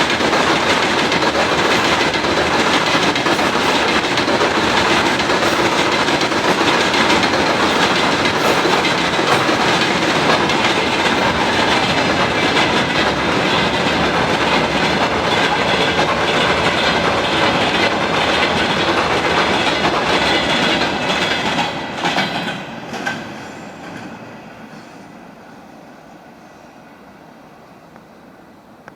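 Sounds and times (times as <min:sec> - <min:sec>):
wheels clattering over rail joints: 0:00.0 - 0:23.2
freight train rolling past: 0:00.0 - 0:28.9.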